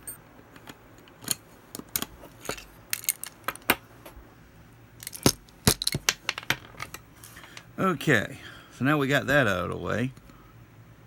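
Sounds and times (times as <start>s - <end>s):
sharp metal clicks and clinks: 1.9s - 3.6s, 5.0s - 6.0s.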